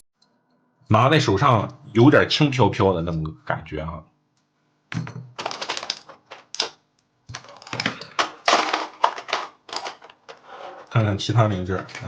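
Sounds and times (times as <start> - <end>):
model kit parts clattering: 5.0 - 6.7, 7.3 - 11.0.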